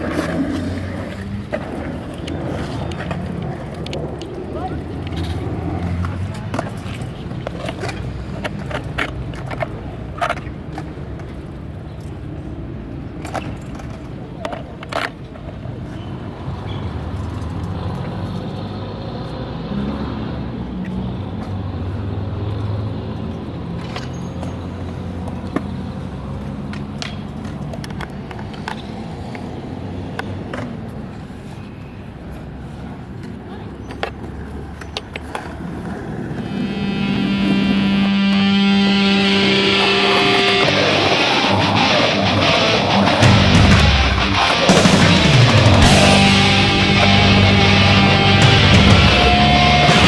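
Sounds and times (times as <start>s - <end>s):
skateboard wheels rumbling: 0.0s - 50.0s.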